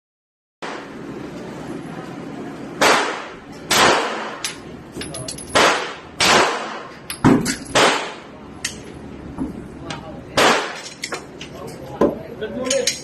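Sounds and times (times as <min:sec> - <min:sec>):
pistol shots: 0:02.8 - 0:04.4, 0:05.5 - 0:06.9, 0:07.7 - 0:08.2, 0:10.4 - 0:10.8.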